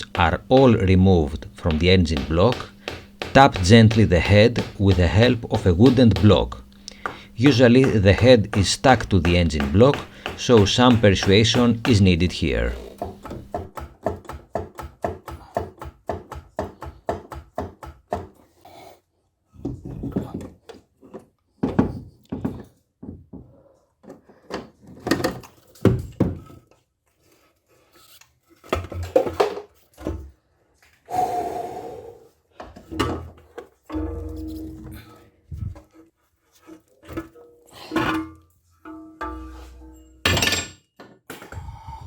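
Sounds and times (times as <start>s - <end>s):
wooden block knocking on metal: 0.0s - 15.2s, 33.9s - 35.0s.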